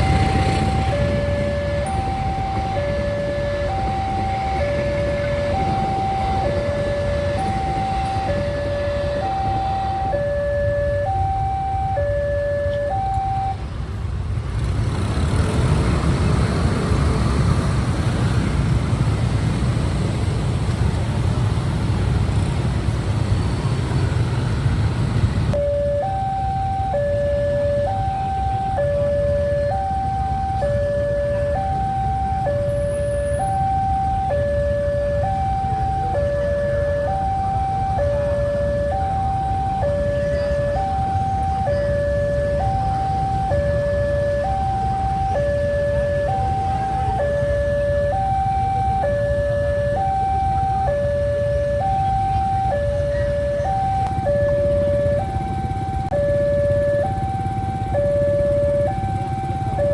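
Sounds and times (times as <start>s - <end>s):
level crossing two-tone alarm: 0.0s - 13.6s, 25.5s - 59.9s.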